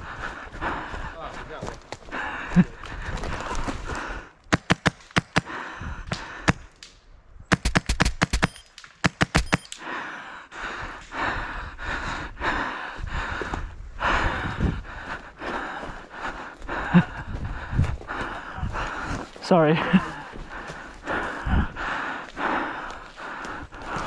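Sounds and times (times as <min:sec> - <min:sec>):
noisy breathing: 0:05.3 - 0:06.7, 0:09.4 - 0:24.0
airsoft guns firing: 0:07.5 - 0:09.8.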